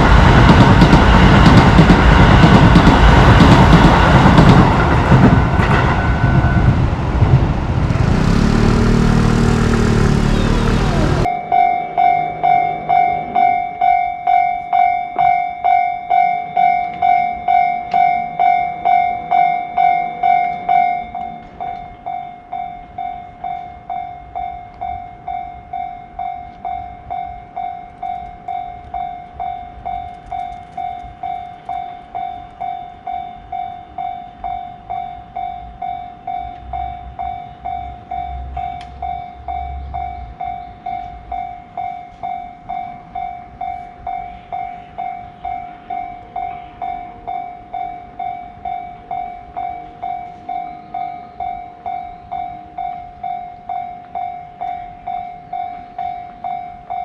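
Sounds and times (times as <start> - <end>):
level crossing warning bell: 0.0 - 57.0
passing train rumble: 0.0 - 57.0.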